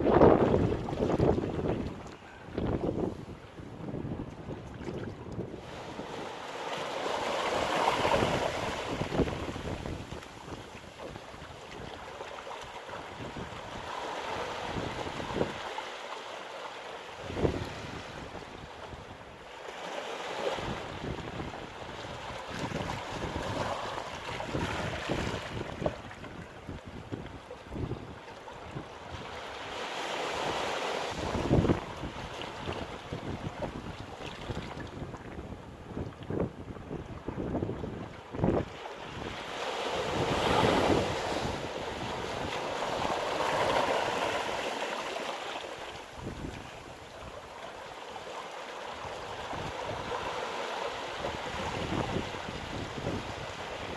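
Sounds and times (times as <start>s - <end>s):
wind buffeting microphone: 0.0s - 6.3s, 7.6s - 11.9s, 20.6s - 29.3s, 31.1s - 39.4s, 40.0s - 44.2s, 46.0s - 47.3s, 51.2s - 53.9s
surf breaking on shore: 0.0s - 16.2s, 19.8s - 53.9s.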